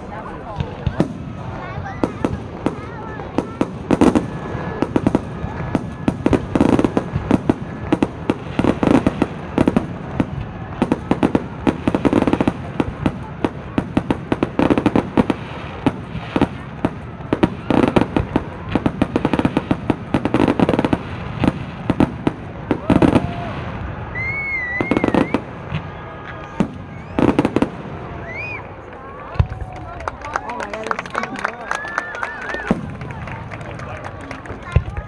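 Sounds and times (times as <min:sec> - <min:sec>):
fireworks crackling and popping: 0:00.0 - 0:35.0
fireworks booms: 0:00.1 - 0:29.9, 0:32.6 - 0:35.0.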